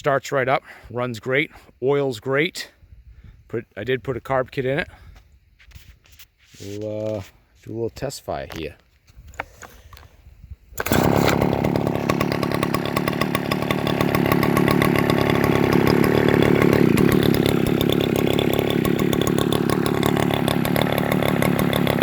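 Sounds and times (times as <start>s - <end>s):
chainsaw engine running: 10.8s - 22.0s.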